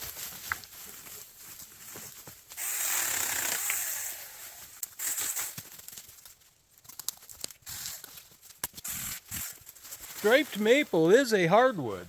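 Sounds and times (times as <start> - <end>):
chainsaw cutting wood: 2.6 - 5.6.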